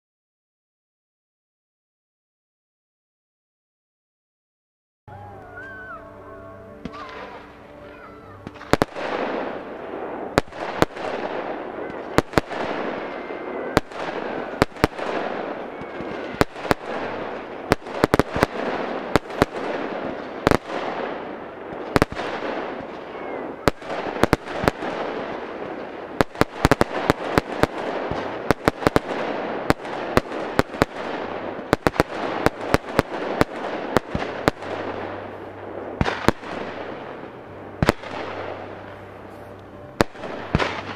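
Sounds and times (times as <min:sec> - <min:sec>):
fireworks bangs: 0:05.1 - 0:40.9
fireworks crackling and hissing: 0:05.2 - 0:40.9.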